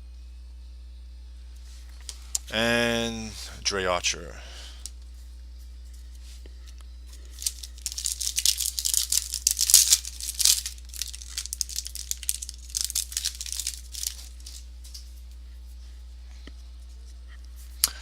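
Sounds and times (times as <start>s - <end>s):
wrapper being torn and crinkled: 7.1s - 15.1s.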